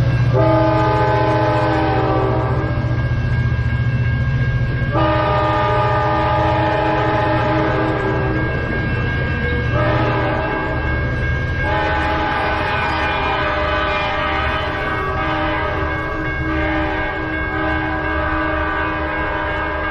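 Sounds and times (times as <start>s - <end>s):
train rumbling past: 0.0s - 19.9s
locomotive air horn chord: 0.3s - 2.9s, 4.9s - 8.3s, 9.7s - 10.8s, 11.6s - 19.9s.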